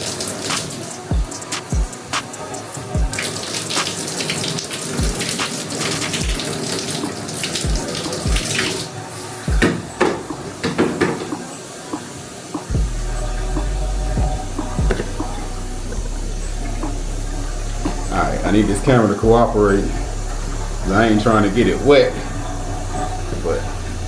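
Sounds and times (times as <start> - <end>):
water splashing: 0.0 - 13.0
tap water running into bathtub: 0.0 - 24.0
low thumps: 12.7 - 18.6
steady low rumble: 12.8 - 24.0.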